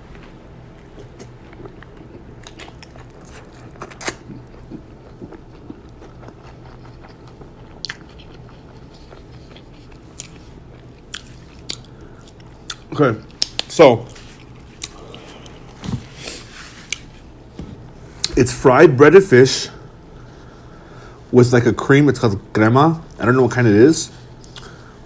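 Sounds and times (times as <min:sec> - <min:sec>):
low steady hum: 0:00.0 - 0:25.0
person chewing crunchy food: 0:00.7 - 0:17.4.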